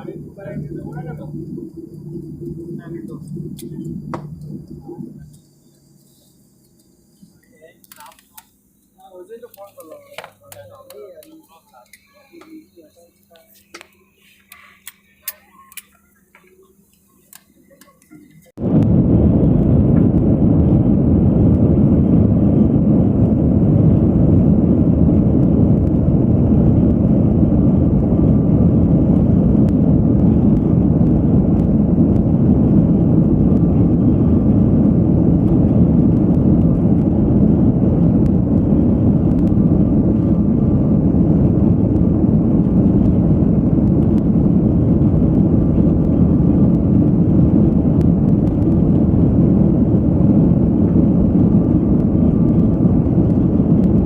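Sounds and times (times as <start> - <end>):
moving vehicle roar: 0.0 - 7.7, 18.5 - 54.0.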